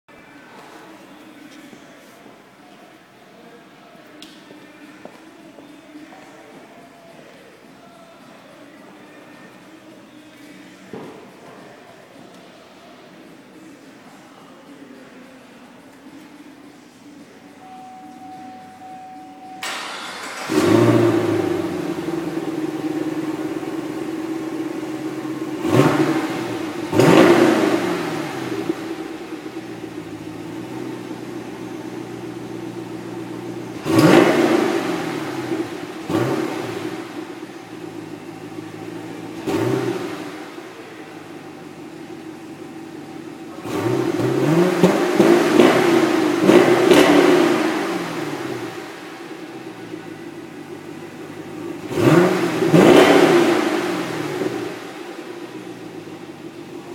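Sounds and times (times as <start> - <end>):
exhaust cracks: 19.6 - 40.7, 41.4 - 56.8
car engine starting and revving: 19.6 - 56.9.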